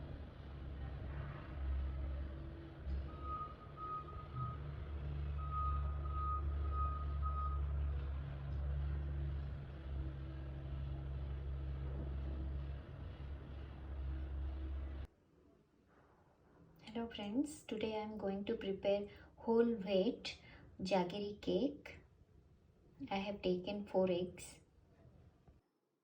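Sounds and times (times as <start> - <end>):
steady low rumble: 7.8 - 15.1.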